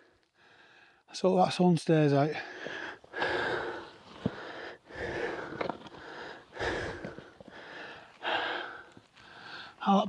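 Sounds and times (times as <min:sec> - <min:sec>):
heavy laboured breathing: 0:02.3 - 0:09.9.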